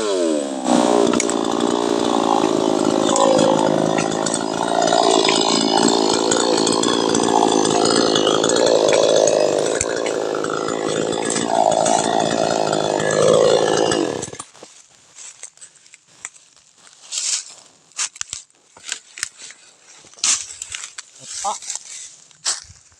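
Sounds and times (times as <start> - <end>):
chainsaw cutting branches: 0.0 - 14.6.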